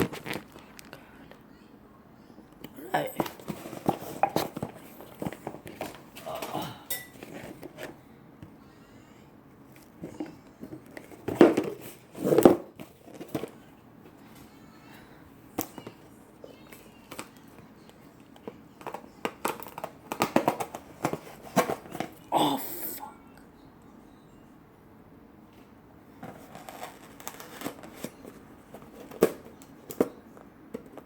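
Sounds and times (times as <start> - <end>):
packaging rustling: 0.0 - 0.9, 26.2 - 29.4
packaging crinkling and clicking: 26.2 - 30.1.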